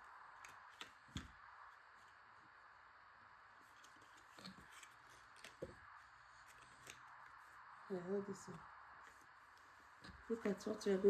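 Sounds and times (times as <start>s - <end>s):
faint room hiss: 0.0s - 11.0s.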